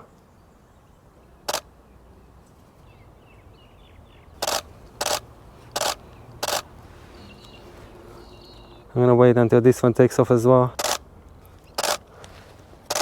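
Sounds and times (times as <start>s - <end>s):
camera shutter firing: 1.5s - 1.7s, 4.4s - 6.7s, 10.8s - 11.0s, 11.8s - 12.0s.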